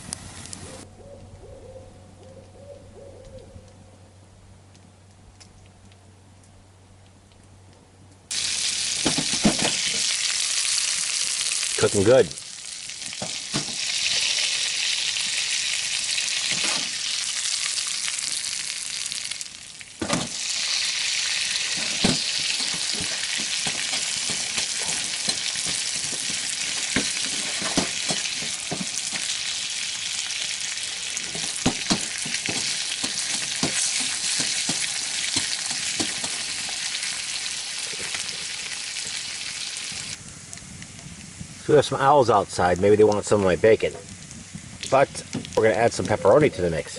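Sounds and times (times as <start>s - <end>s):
grease popping and spattering: 8.3s - 40.1s
bacon sizzling in a pan: 8.3s - 40.5s.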